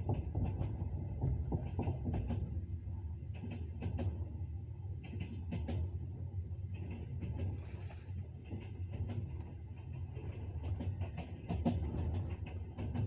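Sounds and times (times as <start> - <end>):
moving train rumble: 0.0 - 13.0.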